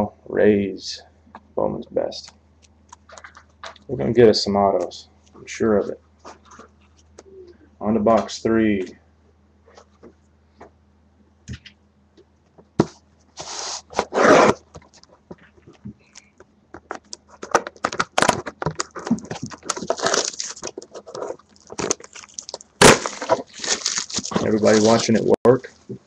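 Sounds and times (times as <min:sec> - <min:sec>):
packaging crinkling and rustling: 0:16.8 - 0:25.4
packaging tearing: 0:17.4 - 0:25.3.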